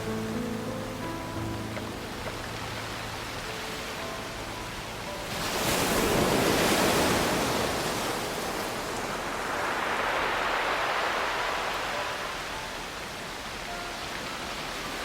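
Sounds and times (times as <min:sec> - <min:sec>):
waves breaking on pebble beach: 0:05.3 - 0:15.0.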